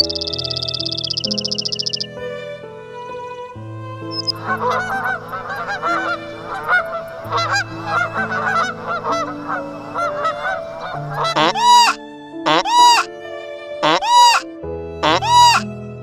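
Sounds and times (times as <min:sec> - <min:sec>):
loud rising and falling bird call: 0:00.0 - 0:02.1, 0:04.2 - 0:13.1, 0:13.8 - 0:15.6
background music with held notes: 0:00.0 - 0:16.0
flock of birds calling: 0:04.2 - 0:13.1, 0:13.8 - 0:15.6.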